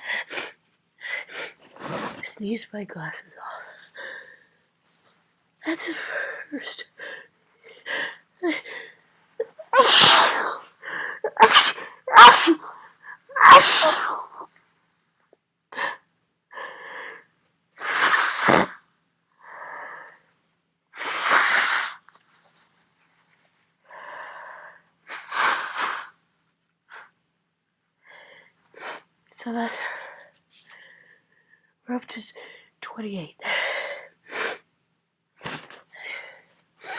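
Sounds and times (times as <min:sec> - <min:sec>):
person sneezing: 0:09.8 - 0:12.8, 0:13.4 - 0:14.4.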